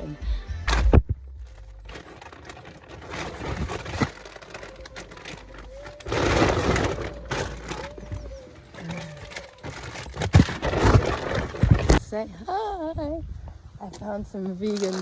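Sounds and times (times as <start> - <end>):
rustling burst: 0.7 - 12.0
pigeons cooing: 5.2 - 9.7.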